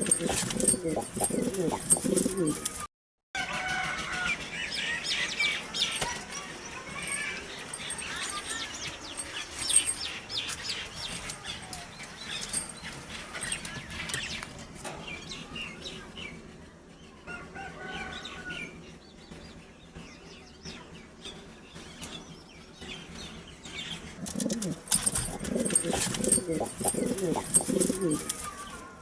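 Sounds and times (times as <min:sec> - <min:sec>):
birds chirping: 0:00.0 - 0:02.9, 0:04.3 - 0:29.0
wings fluttering: 0:00.0 - 0:02.9, 0:05.7 - 0:14.6, 0:24.2 - 0:29.0.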